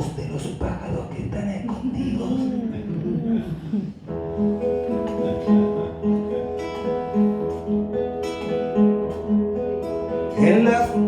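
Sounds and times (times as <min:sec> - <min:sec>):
acoustic guitar chords: 0:02.0 - 0:11.0.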